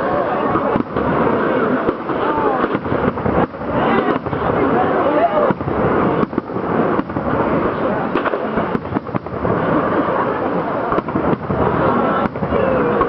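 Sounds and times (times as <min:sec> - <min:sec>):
fireworks bangs and booms: 0:00.0 - 0:13.0
fireworks crackling: 0:00.0 - 0:13.0.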